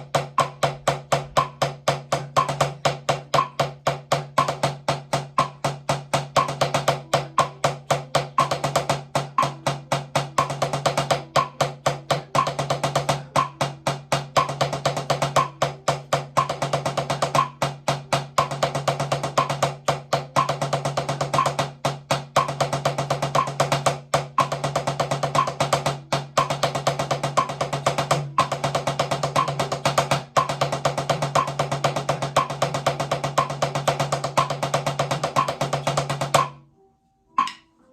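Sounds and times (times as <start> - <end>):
metronome click: 37.3 - 37.7.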